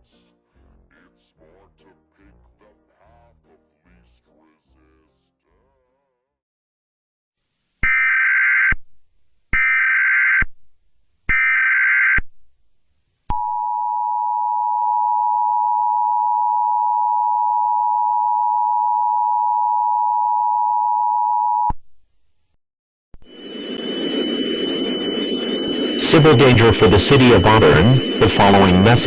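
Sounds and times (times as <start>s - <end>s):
two-tone attention signal: 23.2s - 29.0s
digital data screech: 23.3s - 29.0s.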